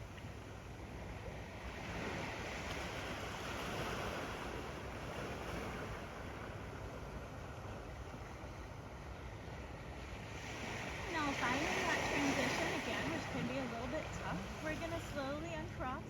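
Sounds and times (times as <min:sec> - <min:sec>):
wind rumble on microphone: 0:00.0 - 0:15.9
ocean waves lapping on beach: 0:00.0 - 0:16.0.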